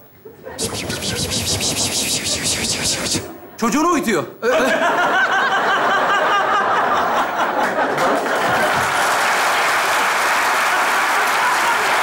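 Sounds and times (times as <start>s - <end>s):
audience laughing: 4.5s - 9.2s, 10.7s - 12.0s
applause: 7.6s - 12.0s.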